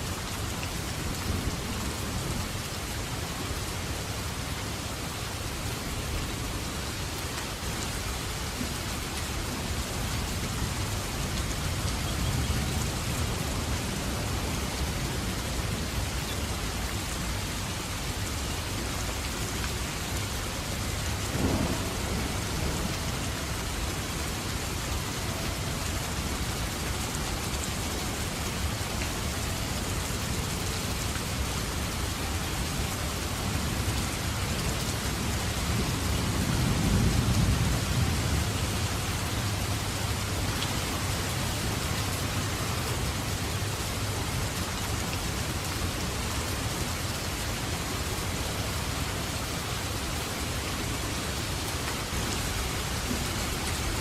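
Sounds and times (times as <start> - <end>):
steady rain: 0.0 - 54.0
thunder rolling: 21.3 - 23.2.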